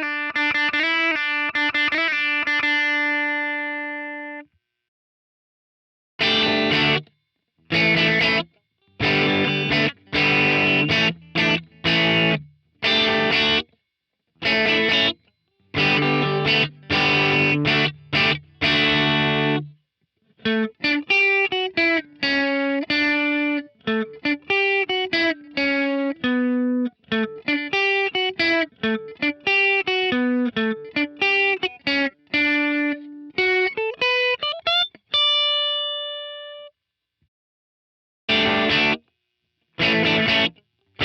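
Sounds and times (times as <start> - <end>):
electric guitar driven chords: 6.2 - 7.1, 7.7 - 13.7, 14.4 - 19.8, 20.5 - 36.7, 38.3 - 39.0, 39.8 - 40.6
fast electric guitar lead run: 15.8 - 19.7, 38.3 - 39.0, 39.8 - 40.6.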